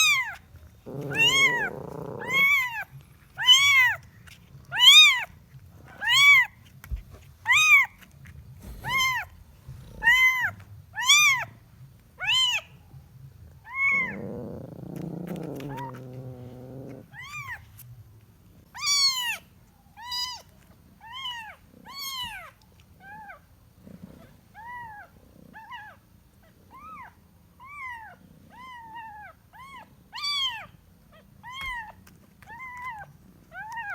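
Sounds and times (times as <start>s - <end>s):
kitten meowing: 0.0s - 4.0s, 18.8s - 19.4s.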